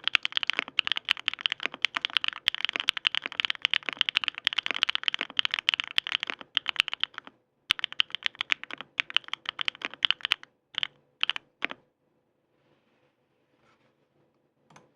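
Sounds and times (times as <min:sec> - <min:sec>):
typing on mechanical keyboard: 0:00.0 - 0:11.8.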